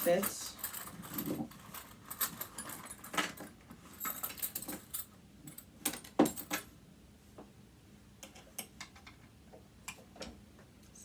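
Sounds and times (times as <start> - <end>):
metal hex keys clinking: 0.0 - 6.7.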